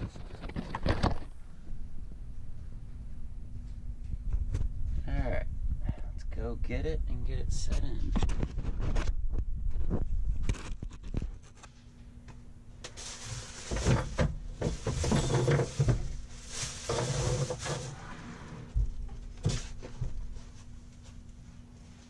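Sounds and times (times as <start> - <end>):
faint steady hum: 0.0 - 22.0
scraping and rustling: 12.9 - 22.0
equipment clunking and knocking: 13.7 - 16.2.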